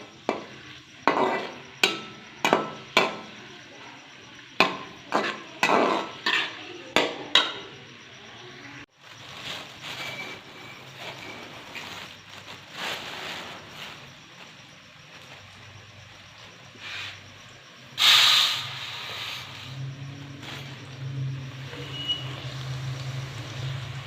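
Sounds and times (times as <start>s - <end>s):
utensils knocking on cookware: 0.0s - 3.3s, 4.6s - 7.7s.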